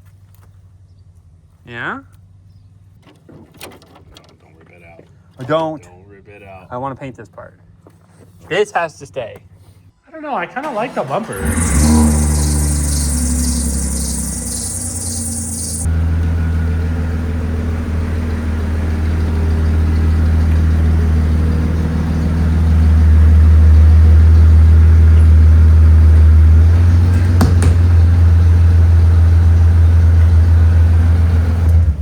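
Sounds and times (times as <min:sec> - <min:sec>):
car engine idling: 0:11.0 - 0:31.6.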